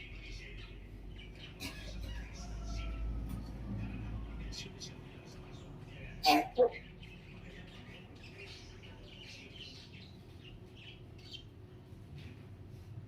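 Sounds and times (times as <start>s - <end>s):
parrots chirping: 0.1s - 3.1s, 6.2s - 11.5s.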